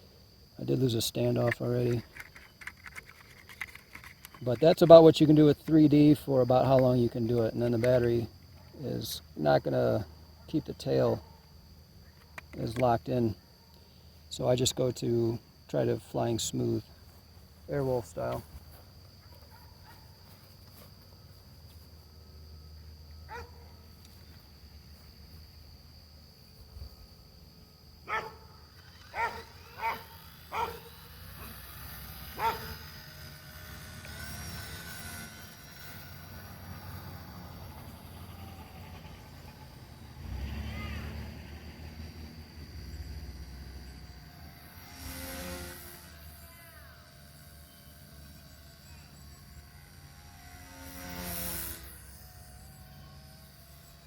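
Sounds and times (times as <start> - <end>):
steady high whine: 0.0 - 40.3, 41.5 - 54.0
animal barking: 23.3 - 23.6, 28.1 - 28.4, 29.1 - 31.6, 32.4 - 32.7.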